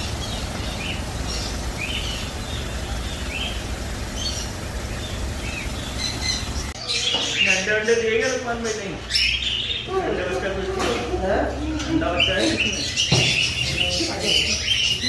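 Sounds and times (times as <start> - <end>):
low rumble: 0.0 - 6.8
small birds chirping: 0.0 - 15.0.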